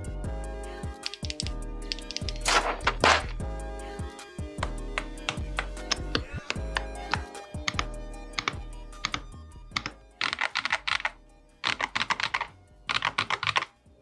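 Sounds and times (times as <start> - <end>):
plucked background music: 0.0 - 14.0
rapid keyboard key clicks: 1.0 - 2.5, 5.0 - 13.8.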